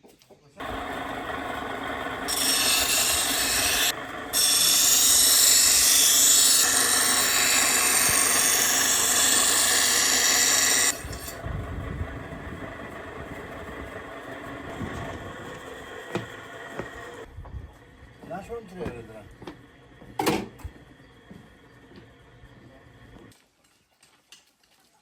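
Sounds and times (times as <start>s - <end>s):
small engine power tool running: 0.6s - 17.3s.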